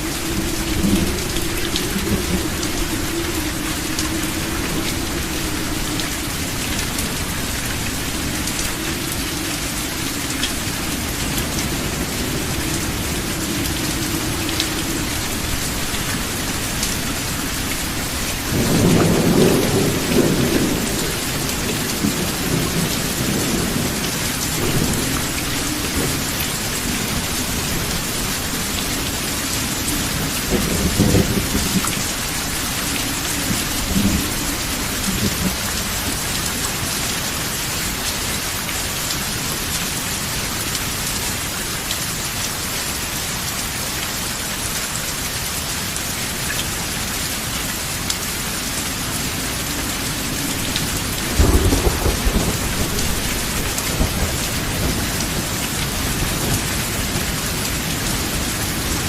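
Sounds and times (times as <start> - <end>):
rumbling thunder: 0.0 - 36.2, 50.0 - 59.0
steady rain falling: 0.0 - 59.0.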